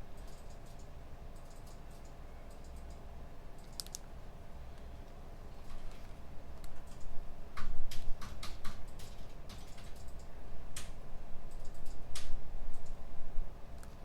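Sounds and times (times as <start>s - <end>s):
computer keyboard typing: 0.2s - 4.0s, 6.6s - 13.0s.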